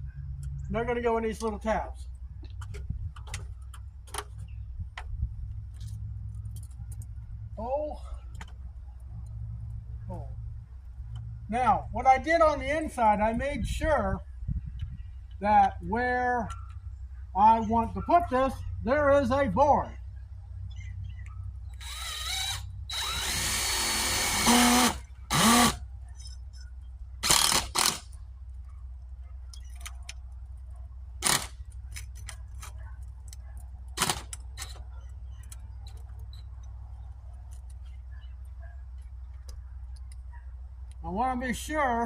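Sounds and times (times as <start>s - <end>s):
cordless drill driving screws: 21.8s - 25.8s, 27.2s - 28.0s, 31.2s - 31.6s.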